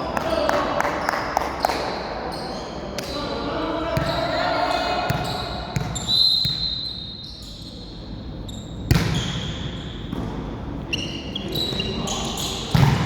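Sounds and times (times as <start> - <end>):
volleyball struck hard: 12.7 - 13.0.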